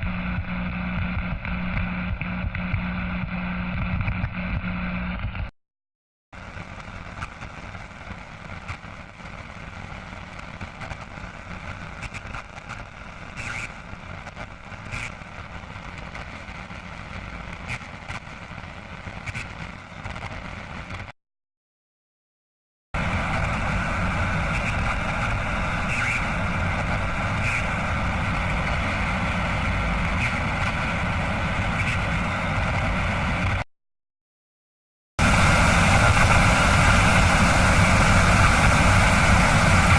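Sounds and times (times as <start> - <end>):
steady rumbling noise: 6.4 - 21.1, 23.0 - 33.6, 35.2 - 39.9.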